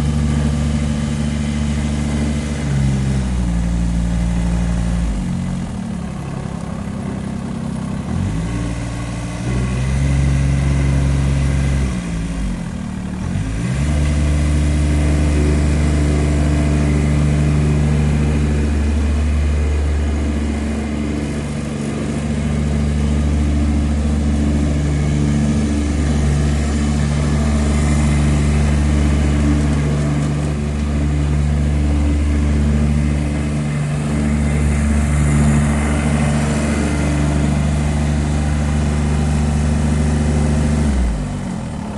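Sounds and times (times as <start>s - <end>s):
ride-on mower diesel engine: 0.0s - 41.9s.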